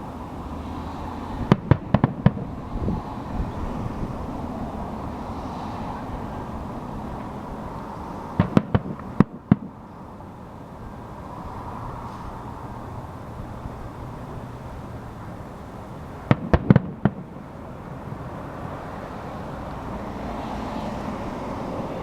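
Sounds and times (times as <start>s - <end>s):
steady background rumble: 0.0s - 20.0s
fireworks bursting with sharp bangs: 1.4s - 2.9s, 8.3s - 9.9s, 16.2s - 18.3s.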